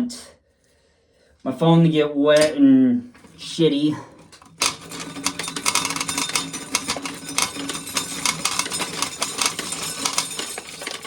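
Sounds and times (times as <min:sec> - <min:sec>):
corn sheller rattling: 0:03.2 - 0:11.0.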